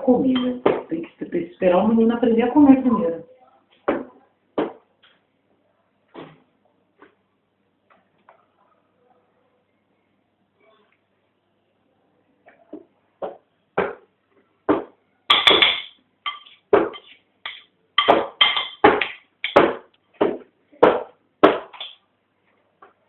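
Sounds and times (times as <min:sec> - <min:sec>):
metal spoon tapping a dish: 0:15.3 - 0:19.6.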